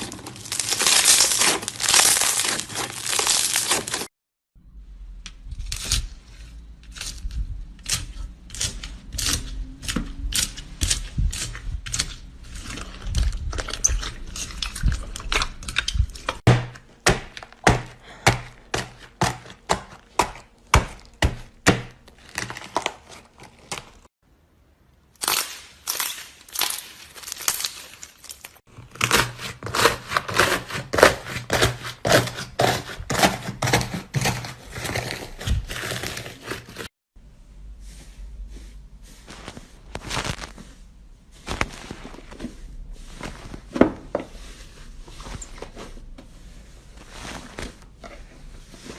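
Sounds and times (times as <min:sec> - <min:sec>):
slime crackling: 0:00.0 - 0:04.1.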